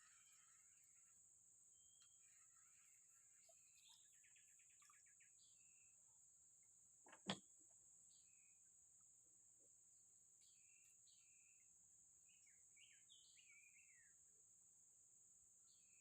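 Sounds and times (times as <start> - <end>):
bird chirps: 1.8 - 6.0.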